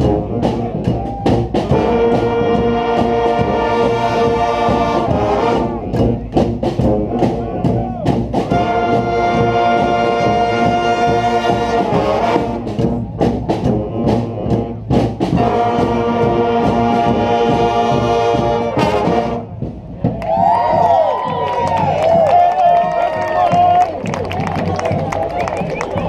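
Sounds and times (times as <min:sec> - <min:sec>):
brass band playing rock tune: 0:00.0 - 0:26.0
crowd whooping and cheering: 0:00.7 - 0:01.6, 0:20.0 - 0:26.0.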